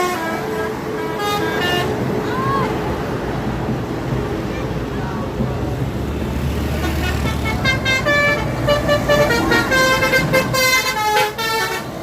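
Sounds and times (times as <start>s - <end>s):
bus engine rumble: 0.0s - 12.0s
bus horn playing short notes: 6.8s - 12.0s.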